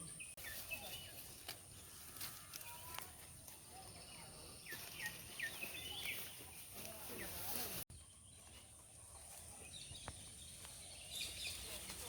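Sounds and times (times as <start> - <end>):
bird chirps: 3.8 - 12.0.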